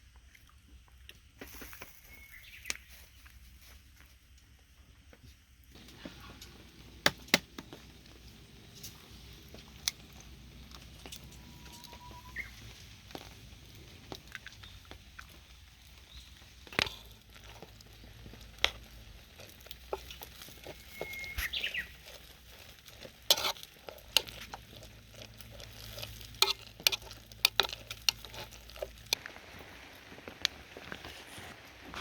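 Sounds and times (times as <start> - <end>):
low steady hiss: 0.0 - 22.8, 27.2 - 32.0
sharp pops and snaps: 5.7 - 31.1
campfire crackling: 5.7 - 32.0.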